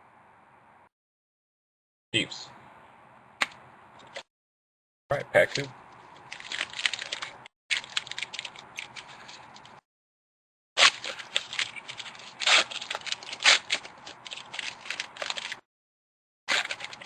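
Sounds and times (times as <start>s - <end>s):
cards rustling: 5.4s - 9.8s, 10.8s - 15.6s, 16.5s - 17.0s
wrapper being torn open: 6.3s - 9.6s, 10.8s - 15.6s, 16.5s - 17.0s.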